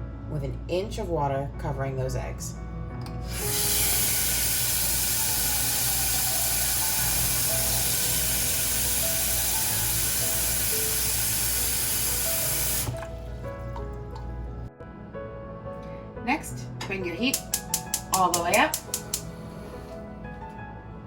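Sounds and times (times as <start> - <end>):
background music: 0.0 - 21.0
tap water running into pot: 3.2 - 14.4.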